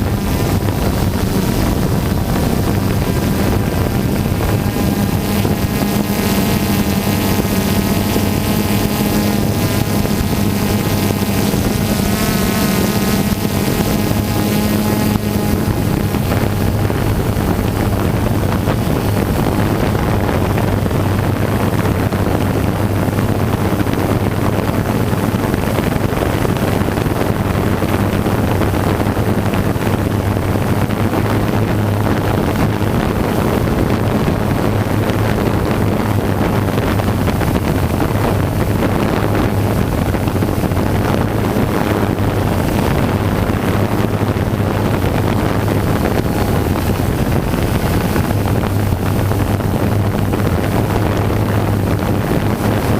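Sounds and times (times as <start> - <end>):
drone motors humming: 0.0 - 52.9
wind noise on microphone: 0.0 - 52.9.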